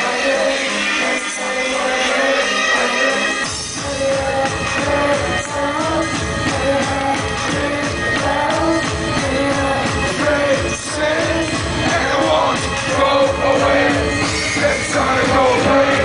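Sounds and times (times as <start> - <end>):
fast pounding beat: 3.5 - 16.0.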